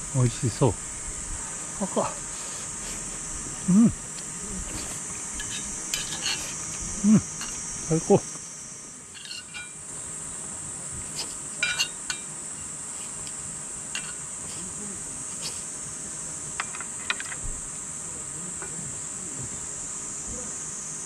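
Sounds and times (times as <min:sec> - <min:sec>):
high-pitched insect drone: 0:00.0 - 0:21.0
tableware clinking: 0:05.4 - 0:06.5, 0:09.1 - 0:09.8, 0:11.6 - 0:12.7.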